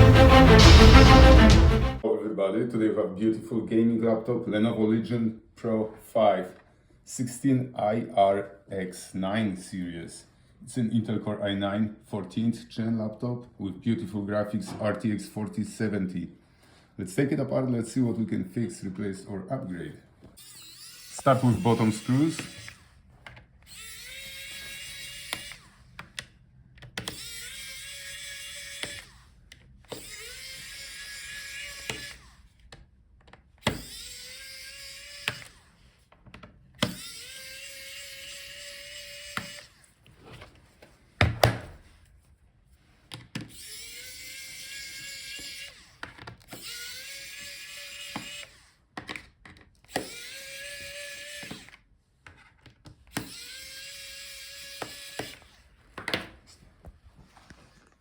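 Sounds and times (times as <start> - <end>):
electric screwdriver whine: 20.4 - 23.0, 23.6 - 26.0, 27.0 - 32.4, 33.6 - 35.8, 36.8 - 39.9, 43.5 - 48.8, 49.8 - 51.8, 53.1 - 55.7.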